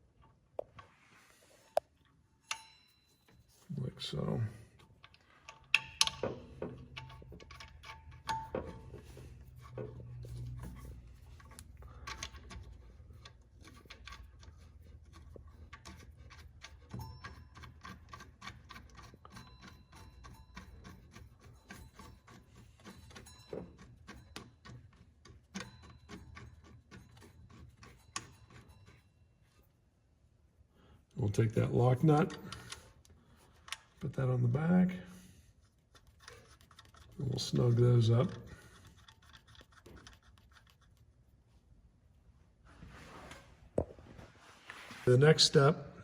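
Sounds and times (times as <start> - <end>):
metallic clicks and rattles: 2.0 - 29.0, 31.4 - 34.1, 35.6 - 41.0.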